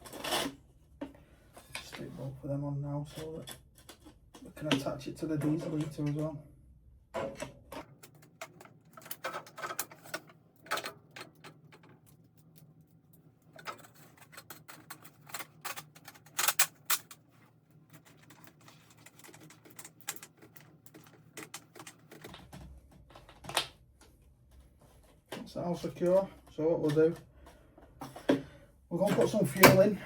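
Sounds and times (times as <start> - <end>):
pipe fittings clicking and knocking: 7.2 - 17.2, 17.9 - 22.6.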